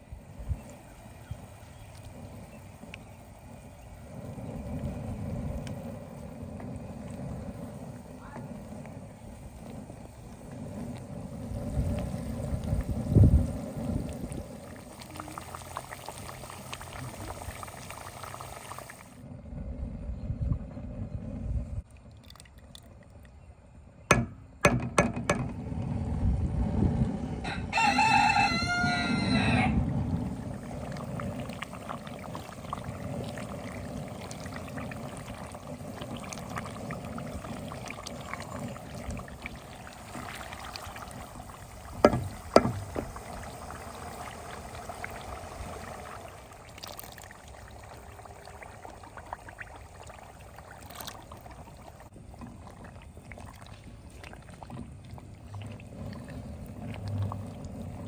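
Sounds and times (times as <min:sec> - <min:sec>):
low rumbling noise: 0:03.4 - 0:21.8, 0:25.2 - 0:58.0
sharp knocks: 0:24.1 - 0:25.5, 0:42.0 - 0:43.1
rooster crowing: 0:27.4 - 0:29.8.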